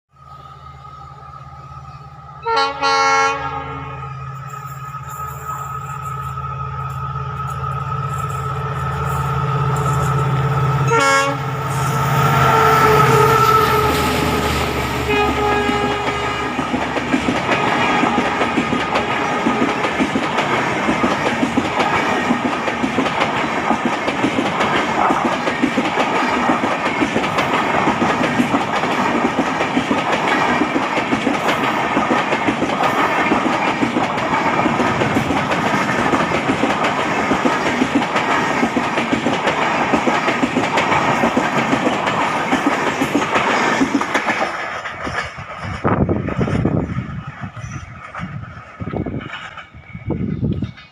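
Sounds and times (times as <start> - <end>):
train horn: 2.4 - 4.4, 10.8 - 17.0
train coaches clattering over rails: 3.6 - 50.9.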